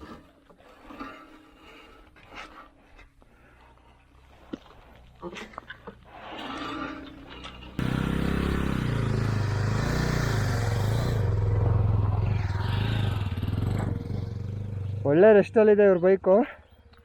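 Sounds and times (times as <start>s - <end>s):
motorcycle engine running: 7.8s - 15.4s.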